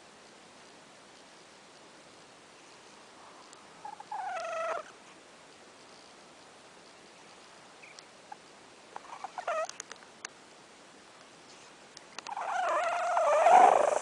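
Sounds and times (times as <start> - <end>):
faint clicks: 9.6 - 10.4
cat snoring: 12.3 - 14.0.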